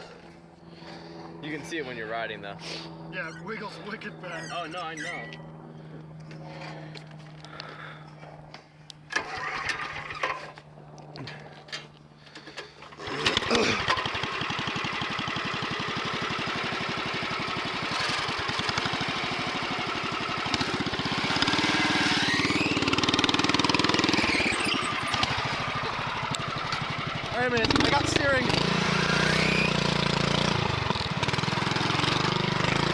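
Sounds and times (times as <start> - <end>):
engine starting and running: 8.9 - 32.9.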